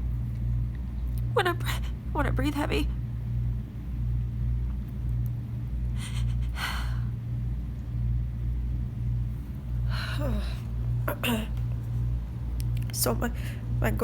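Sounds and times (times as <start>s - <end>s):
low hum: 0.0s - 14.0s
woman breathing heavily: 5.9s - 7.2s, 9.8s - 10.8s
woman sighing: 9.9s - 10.7s.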